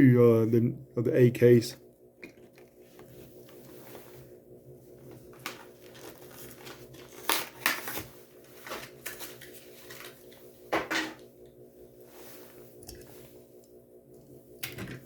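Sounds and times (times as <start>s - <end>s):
steady low hum: 0.0s - 15.0s
plastic package crackling: 5.2s - 10.4s.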